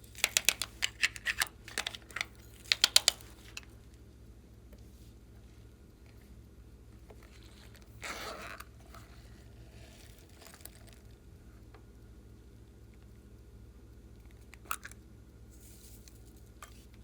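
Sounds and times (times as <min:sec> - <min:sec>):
crunchy squish: 0:07.1 - 0:11.2.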